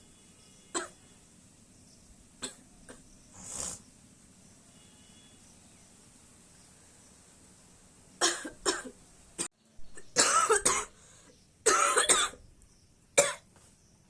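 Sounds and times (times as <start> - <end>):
woman coughing: 8.2 - 9.0, 10.2 - 10.9, 11.7 - 12.4.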